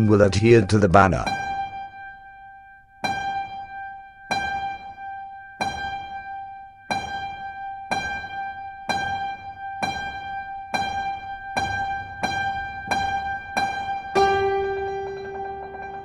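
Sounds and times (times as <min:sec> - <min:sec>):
keyboard repeating high note: 0:14.2 - 0:16.0.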